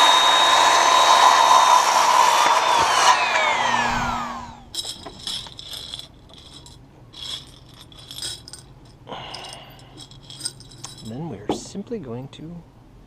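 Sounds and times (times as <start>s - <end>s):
electric saw motor winding down: 0.0s - 4.7s
light metallic clinks and rattles: 4.6s - 11.8s.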